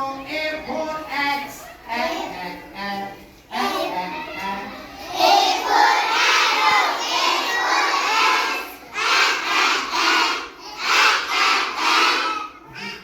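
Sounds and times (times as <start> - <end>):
children chanting in unison: 3.5 - 13.0.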